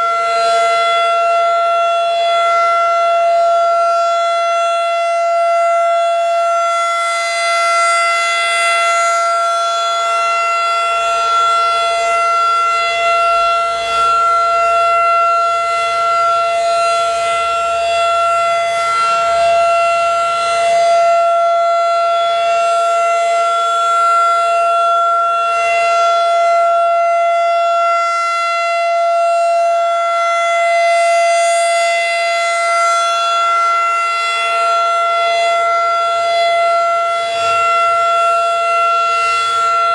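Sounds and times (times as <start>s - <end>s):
tornado siren steady tone: 0.0s - 39.9s.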